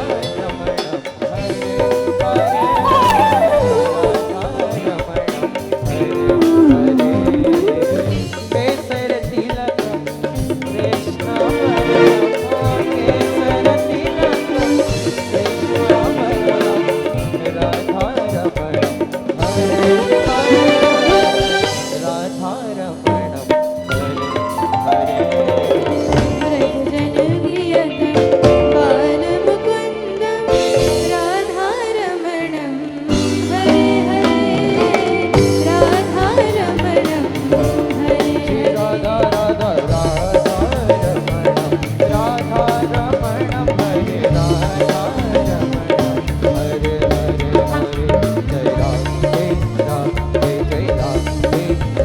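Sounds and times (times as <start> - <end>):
tabla strokes: 0.0 - 11.2
hand drum rhythm: 0.0 - 52.0
sliding melodic lead line: 0.0 - 52.0.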